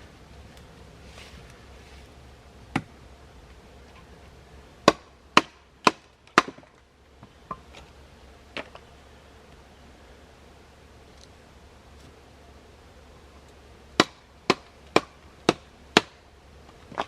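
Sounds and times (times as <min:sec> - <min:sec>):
blade chopping wood: 0:04.8 - 0:06.8, 0:14.0 - 0:16.2.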